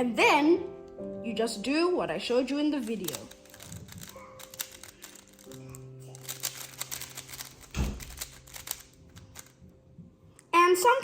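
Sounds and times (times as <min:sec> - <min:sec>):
soft background music: 0:00.0 - 0:11.0
plastic puzzle cube clicking: 0:02.8 - 0:09.6.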